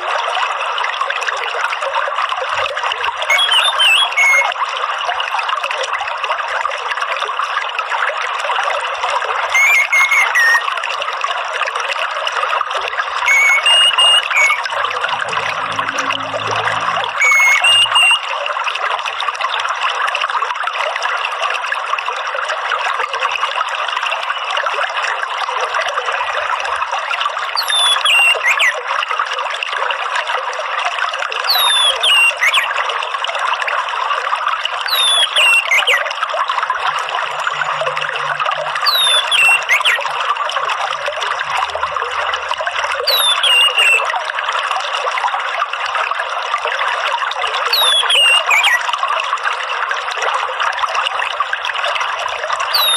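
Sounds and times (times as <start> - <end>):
water trickling: 0.0 - 52.9
falling bird whistle: 3.3 - 4.5, 9.5 - 10.6, 13.3 - 14.9, 17.2 - 18.2, 27.6 - 28.7, 31.5 - 32.7, 34.9 - 36.0, 38.8 - 40.0, 43.1 - 44.0, 47.8 - 48.8.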